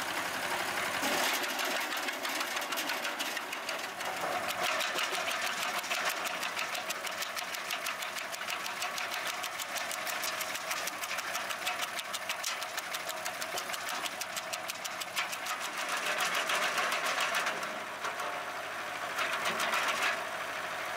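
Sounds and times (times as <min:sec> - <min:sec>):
wood chipper clattering: 0:00.0 - 0:20.9.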